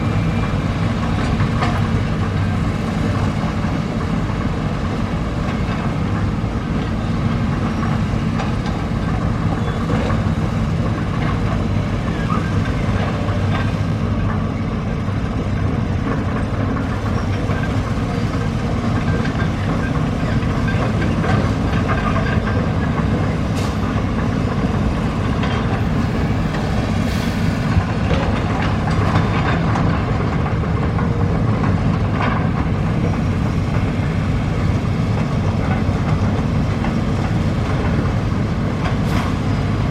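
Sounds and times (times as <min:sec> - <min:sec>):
excavator diesel engine running: 0:00.0 - 0:39.9
machine clanks and knocks: 0:18.4 - 0:26.8, 0:27.7 - 0:39.9.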